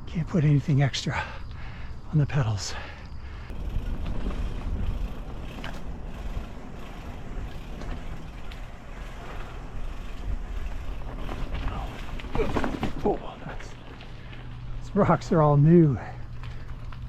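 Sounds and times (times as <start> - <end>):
faint rattles and clicks: 3.5 - 14.6
bike tyres rumbling on dirt: 3.5 - 17.0.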